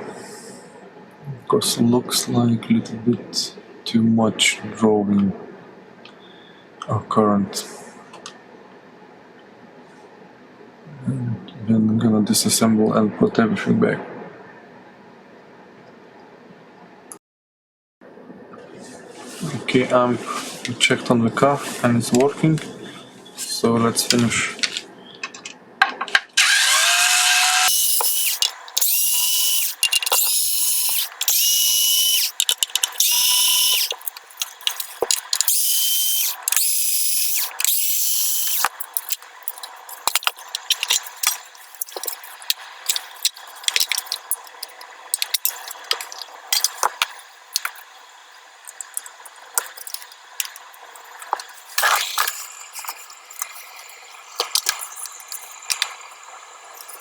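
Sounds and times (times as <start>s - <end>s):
electric screwdriver whirring: 26.4s - 48.0s
parts clicking and rattling: 27.6s - 57.0s.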